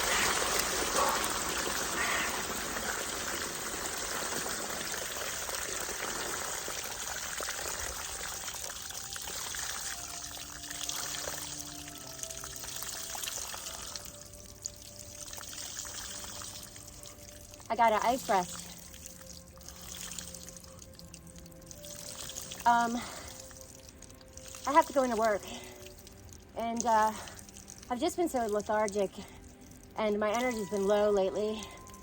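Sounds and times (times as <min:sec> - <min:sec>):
faint background music: 0:00.0 - 0:32.0
water pouring into tub: 0:00.0 - 0:32.0.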